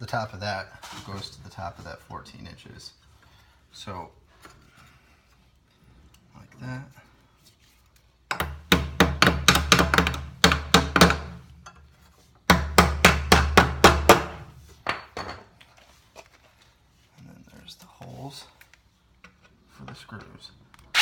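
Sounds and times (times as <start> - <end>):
hammer pounding metal tabs into wood: 8.3 - 11.4, 12.5 - 14.5.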